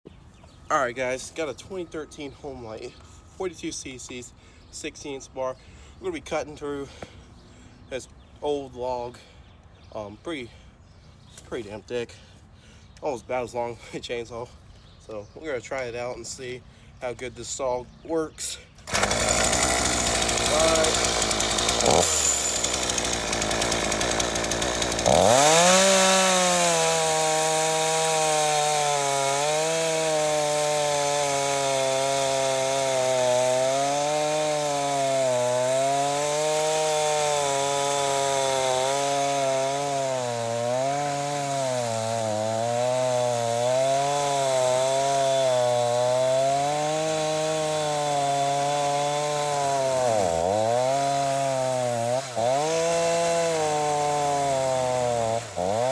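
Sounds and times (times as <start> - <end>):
chainsaw cutting through log: 18.8 - 55.9.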